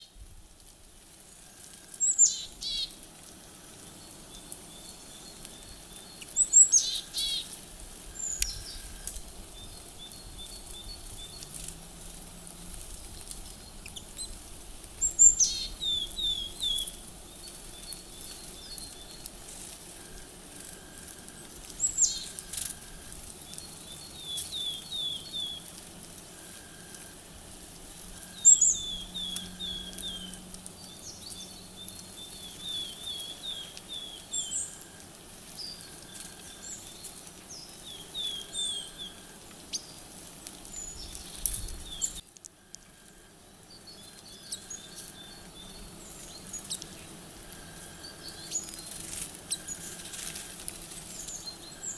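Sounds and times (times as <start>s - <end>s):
high downward-sweeping bird calls: 1.4s - 3.0s, 3.9s - 11.6s, 15.0s - 19.3s, 19.9s - 25.7s, 28.1s - 40.0s, 40.7s - 51.9s.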